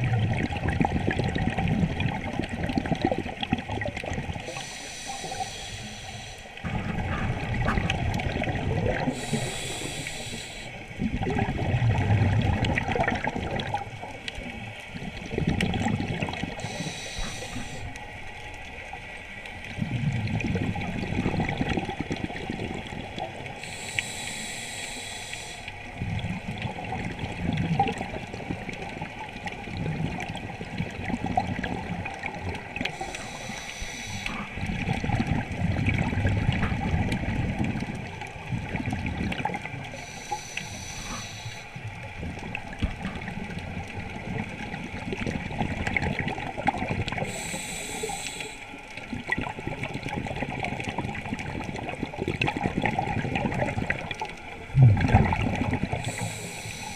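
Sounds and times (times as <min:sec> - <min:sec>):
faint crackle in water: 0:00.0 - 0:56.9
hissing regulator inhalations: 0:04.5 - 0:06.6, 0:09.1 - 0:10.8, 0:16.6 - 0:17.9, 0:23.6 - 0:25.8, 0:32.9 - 0:34.6, 0:39.9 - 0:41.8, 0:47.3 - 0:48.8, 0:56.0 - 0:56.9
bubbling exhalations: 0:11.0 - 0:13.8, 0:49.3 - 0:56.6.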